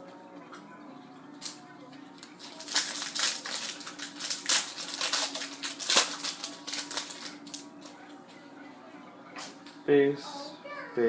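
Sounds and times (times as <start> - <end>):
foil wrapper crinkling and tearing: 2.2 - 7.7.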